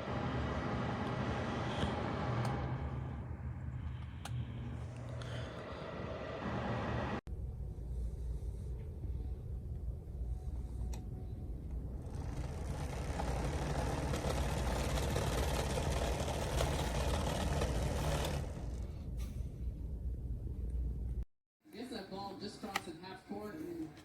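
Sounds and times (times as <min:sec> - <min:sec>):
heater fan humming: 0:00.0 - 0:21.2.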